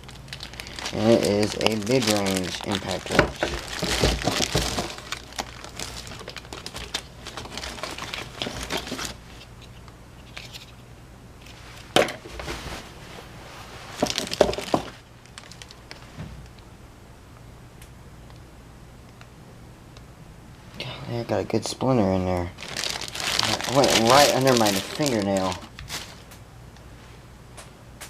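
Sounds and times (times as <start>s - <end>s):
packaging crinkling and rustling: 0.0s - 10.8s, 13.7s - 16.6s, 22.3s - 26.4s.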